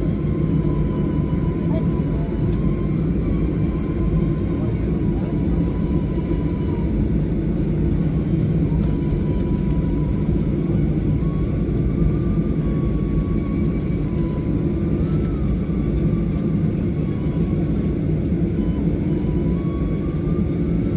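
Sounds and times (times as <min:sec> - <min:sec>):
airliner engines rumbling: 0:00.0 - 0:20.9
faint engine whine: 0:00.0 - 0:20.9.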